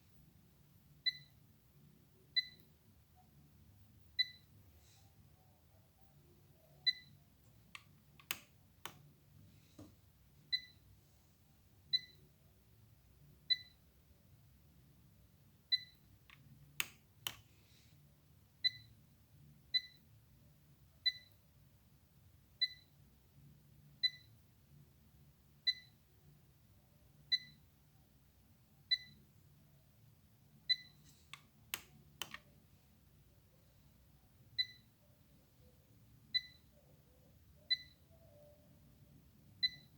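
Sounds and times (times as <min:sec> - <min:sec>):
sharp clicks: 0:07.7 - 0:09.0.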